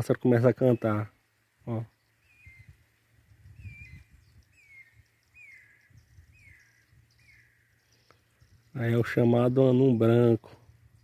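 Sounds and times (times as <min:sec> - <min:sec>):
bird whistled calls: 0:02.2 - 0:02.8, 0:03.5 - 0:08.8.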